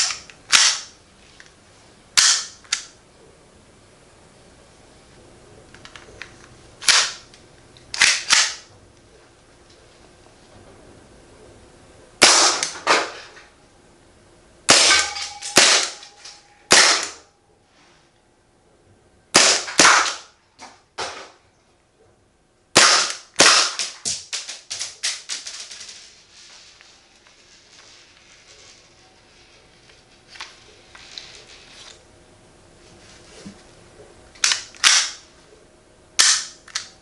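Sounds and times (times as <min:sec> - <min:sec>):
airsoft pistol shots: 0:00.5 - 0:00.9, 0:12.2 - 0:12.9, 0:14.7 - 0:16.1, 0:16.7 - 0:17.2, 0:19.3 - 0:20.3, 0:22.8 - 0:24.2.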